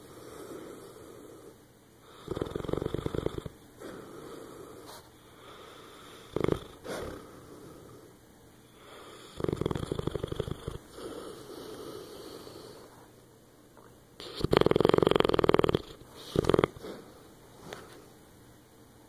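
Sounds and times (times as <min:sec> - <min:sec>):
dog snoring: 0:00.0 - 0:08.1, 0:08.7 - 0:13.0, 0:14.2 - 0:17.2.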